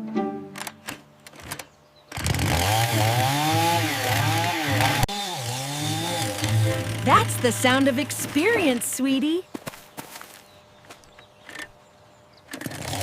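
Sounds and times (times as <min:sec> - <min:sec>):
chainsaw revving: 0:01.4 - 0:08.9, 0:12.5 - 0:13.0.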